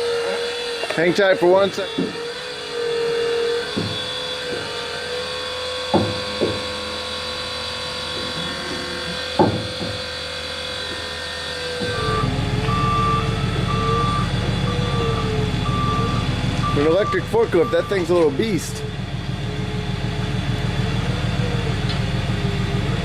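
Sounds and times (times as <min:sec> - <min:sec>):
electric forklift whining: 0:00.0 - 0:23.0
sharp knocks: 0:03.7 - 0:04.7, 0:05.9 - 0:06.7, 0:09.3 - 0:10.1
low hum: 0:11.8 - 0:16.8, 0:17.6 - 0:23.0
warning beep: 0:11.9 - 0:18.2.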